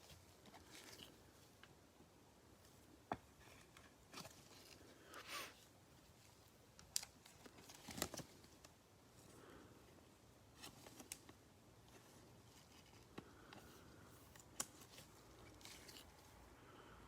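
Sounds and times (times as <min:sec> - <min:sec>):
cards rustling: 0:06.8 - 0:08.7, 0:10.5 - 0:16.4.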